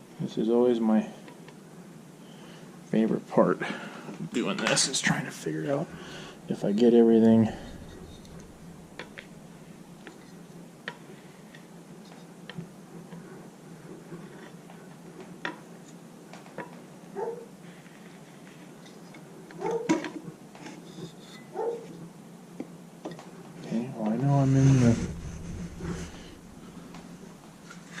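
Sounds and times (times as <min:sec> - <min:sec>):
short muffled thud: 0:24.3 - 0:27.6.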